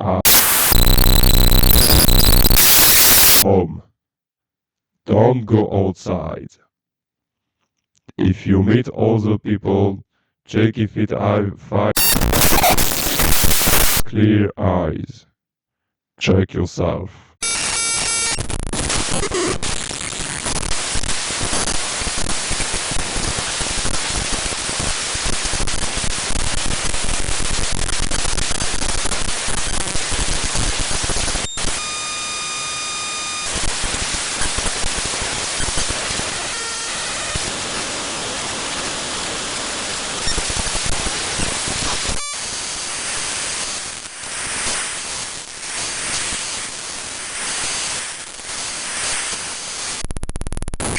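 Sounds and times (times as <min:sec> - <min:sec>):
television static hiss: 0:00.2 - 0:03.4, 0:12.0 - 0:14.0
buzzing electronic tone: 0:00.3 - 0:03.4, 0:12.0 - 0:14.1, 0:17.4 - 0:18.6.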